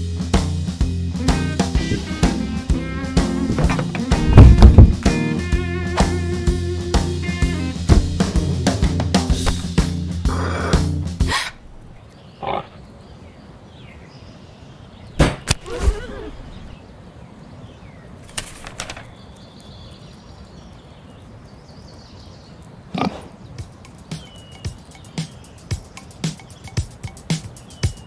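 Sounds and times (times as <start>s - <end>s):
drum music: 0.0s - 11.8s, 23.6s - 28.0s
pig grunts: 10.3s - 12.8s, 22.9s - 23.4s.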